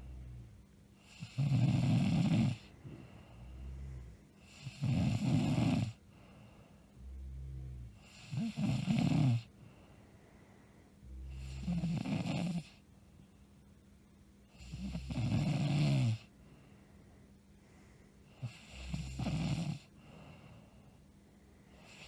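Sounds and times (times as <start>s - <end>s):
quiet breathing: 0.0s - 15.5s, 16.1s - 22.0s
woman snoring loudly: 1.1s - 2.7s, 4.4s - 6.0s, 7.1s - 9.5s, 11.1s - 12.8s, 14.6s - 16.3s, 18.4s - 19.9s.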